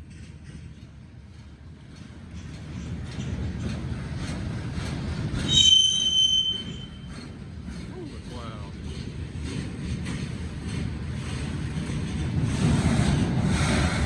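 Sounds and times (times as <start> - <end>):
freight train rumbling past: 0.0 - 14.0
steel wheel squeal: 5.4 - 9.0.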